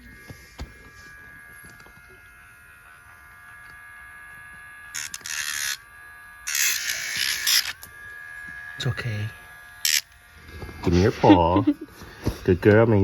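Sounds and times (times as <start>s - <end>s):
nail grinder motor whining: 0.0s - 12.8s
grinder rasping against nail: 4.8s - 7.9s, 9.8s - 10.2s.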